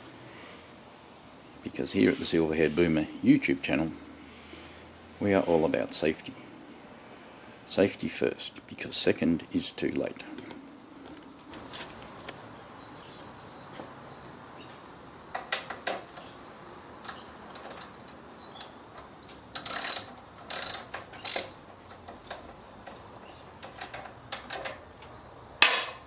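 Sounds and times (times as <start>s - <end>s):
socket ratchet clicking: 19.5s - 22.4s.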